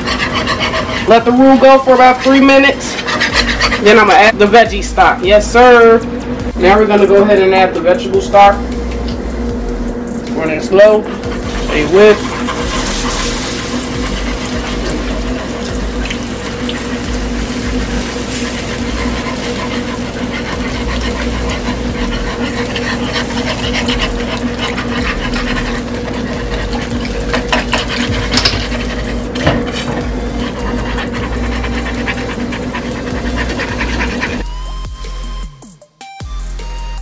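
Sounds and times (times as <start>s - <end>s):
wire whisk scraping in a skillet: 0.0s - 4.3s, 10.9s - 34.5s
steady low hum: 0.0s - 34.9s.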